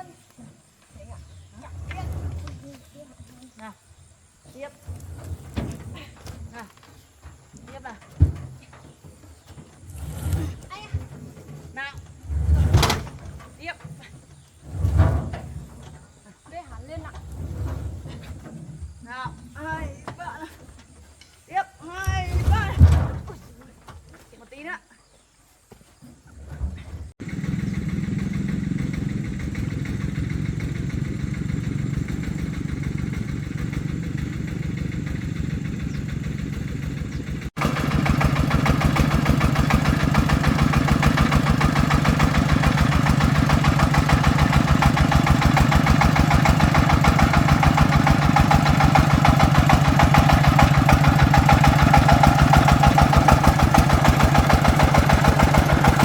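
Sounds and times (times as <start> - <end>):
diesel engine running: 27.2 - 56.0.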